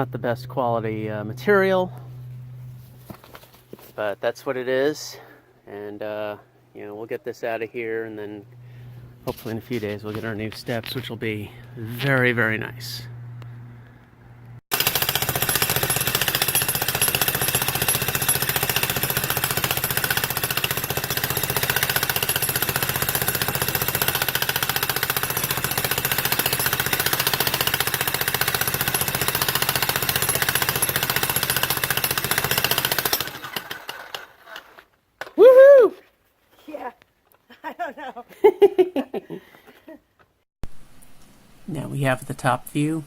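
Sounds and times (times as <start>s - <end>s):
jackhammer hammering concrete: 14.7s - 34.7s.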